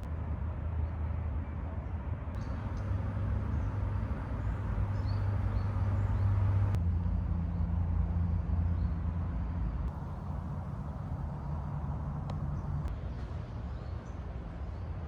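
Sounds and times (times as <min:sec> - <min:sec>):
faint bird chirps: 0:02.4 - 0:06.8
vehicle engine rumble: 0:02.4 - 0:13.5.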